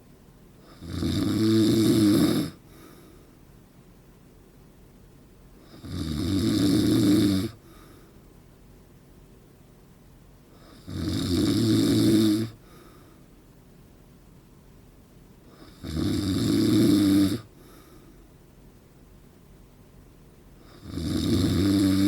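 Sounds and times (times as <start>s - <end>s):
quiet breathing: 0.0s - 0.9s, 2.2s - 3.6s, 6.9s - 8.5s, 10.4s - 10.9s, 12.1s - 13.7s, 17.0s - 18.8s
man snoring: 0.6s - 2.9s, 5.7s - 7.6s, 10.6s - 12.7s, 15.5s - 17.6s, 20.6s - 22.0s.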